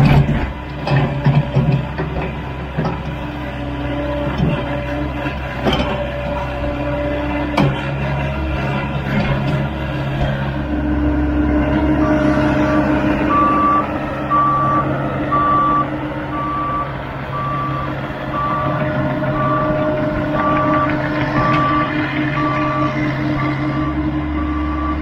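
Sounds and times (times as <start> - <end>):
diesel engine running: 0.0 - 25.0
reverse alarm beeping: 13.3 - 19.8, 20.4 - 25.0.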